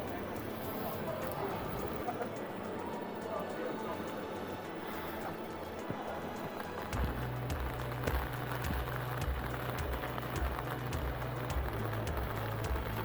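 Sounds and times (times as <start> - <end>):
heavy rain falling: 6.9 - 13.0.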